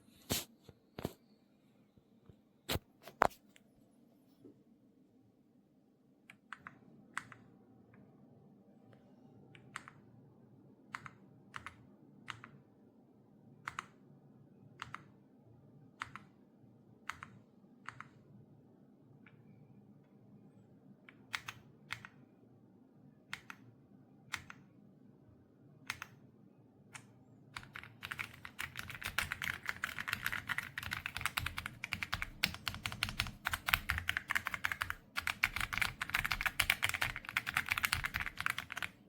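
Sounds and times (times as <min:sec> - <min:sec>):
mechanical keyboard keystroke clacks: 0:27.0 - 0:38.9.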